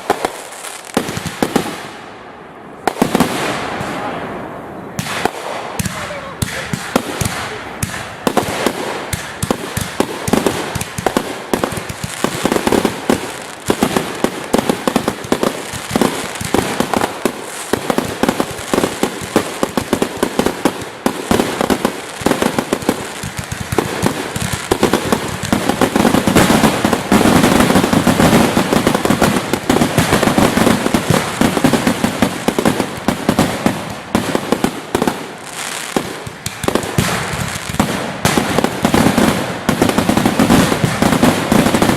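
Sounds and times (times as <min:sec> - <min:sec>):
rapid overlapping firework bangs: 0:00.0 - 0:41.9.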